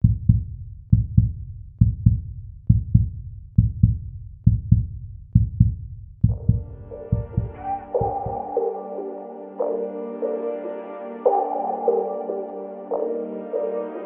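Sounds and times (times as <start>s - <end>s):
heartbeat-like double thump: 0.0s - 8.5s.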